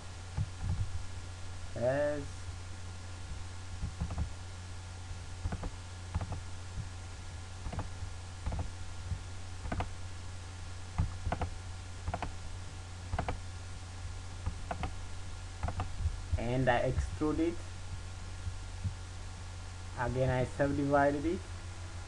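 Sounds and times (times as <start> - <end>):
low electrical hum: 0.0 - 22.0
mouse and keyboard clicks: 3.8 - 4.3, 5.4 - 6.4, 7.6 - 7.9, 8.5 - 8.7, 9.6 - 9.9, 11.0 - 11.5, 12.1 - 12.4, 13.1 - 13.4, 14.4 - 15.0, 15.6 - 16.0.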